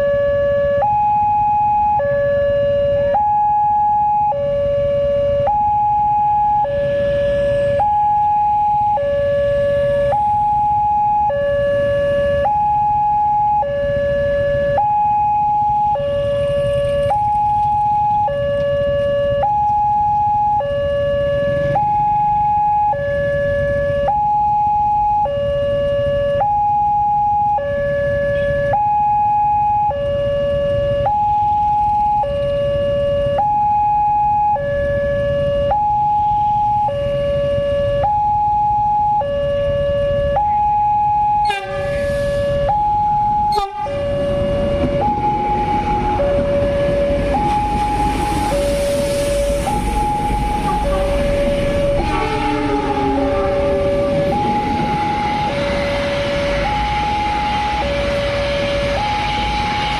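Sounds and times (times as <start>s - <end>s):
two-tone electronic siren: 0.0s - 59.9s
approaching train rumble: 15.6s - 19.4s, 41.4s - 59.9s.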